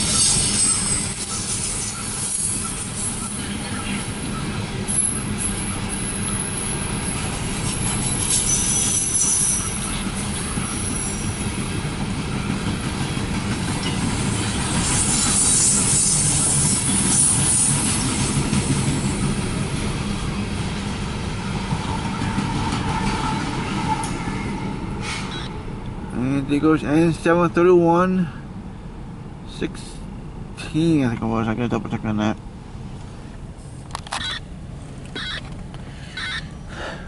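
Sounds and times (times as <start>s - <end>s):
train wheels squealing: 0.0s - 19.8s, 21.4s - 25.6s
train cars rumbling past: 0.0s - 30.7s.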